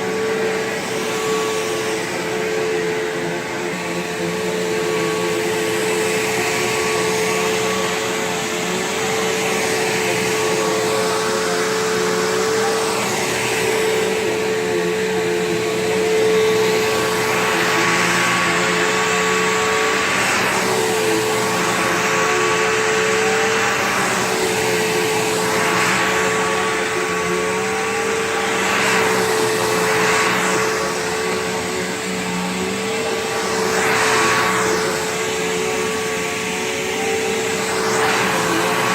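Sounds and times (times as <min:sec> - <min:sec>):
vacuum cleaner motor whine: 0:00.0 - 0:38.9.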